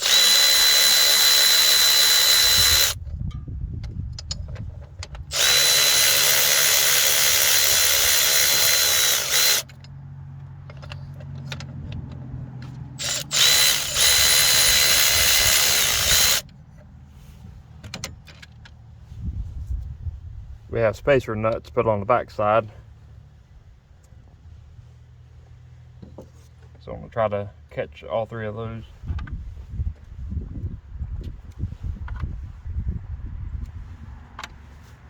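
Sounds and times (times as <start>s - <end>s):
electric ratchet whining: 0.0s - 3.0s, 5.2s - 9.7s, 13.0s - 16.4s.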